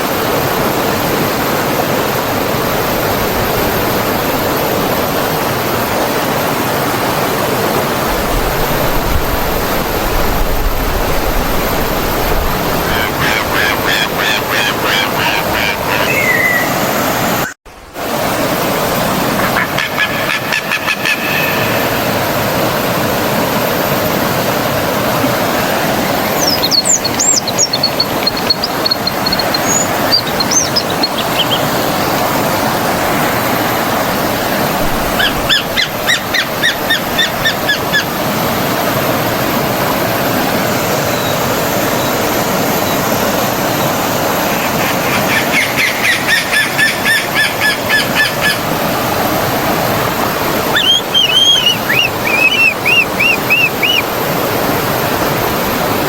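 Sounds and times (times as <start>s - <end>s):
stream flowing: 0.0s - 56.0s
birds singing: 12.6s - 17.6s, 25.8s - 32.5s, 35.1s - 38.2s, 43.7s - 48.7s, 50.6s - 54.2s.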